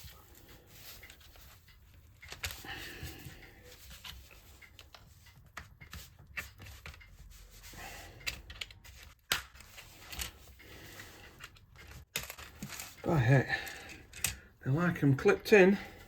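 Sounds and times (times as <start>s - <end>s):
plastic clips clicking and creaking: 0.0s - 7.4s, 8.2s - 14.6s
plastic scraping: 8.3s - 14.4s.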